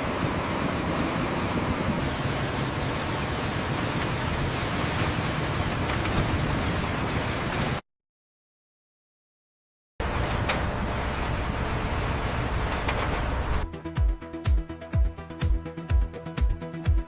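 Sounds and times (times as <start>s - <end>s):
steady rushing noise: 0.0s - 7.8s.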